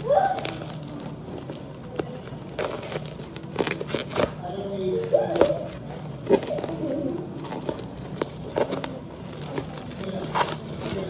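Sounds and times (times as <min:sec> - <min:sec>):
packaging clicks and knocks: 0:00.4 - 0:04.4, 0:07.4 - 0:11.0.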